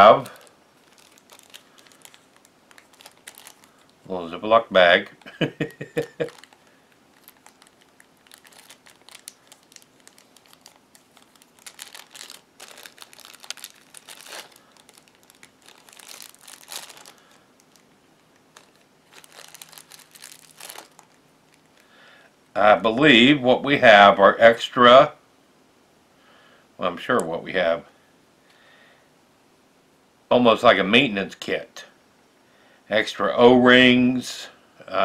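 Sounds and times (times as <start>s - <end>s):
plastic bag crinkling: 0.0s - 21.9s.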